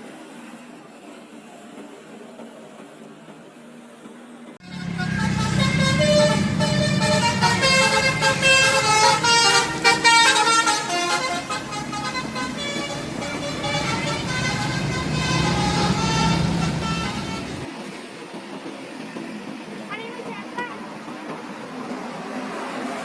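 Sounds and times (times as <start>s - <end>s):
bus engine rumble: 4.6s - 17.7s
bus horn playing a tune: 4.6s - 17.7s.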